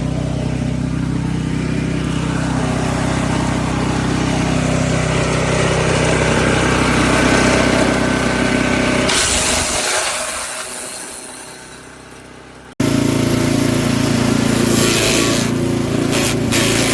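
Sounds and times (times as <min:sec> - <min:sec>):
wood chipper engine running: 0:00.0 - 0:16.9
hiss: 0:14.7 - 0:15.5.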